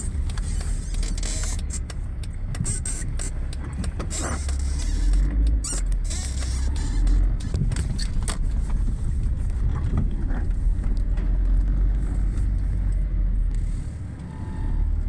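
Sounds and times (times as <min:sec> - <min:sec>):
sharp metallic clicks: 0:00.0 - 0:08.5
heavy machinery engine rumbling: 0:00.0 - 0:15.0.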